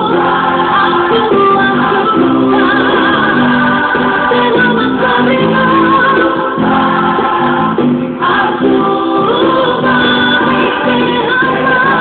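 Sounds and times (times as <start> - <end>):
group singing worship song: 0.0 - 12.0
instrumental accompaniment: 0.0 - 12.0.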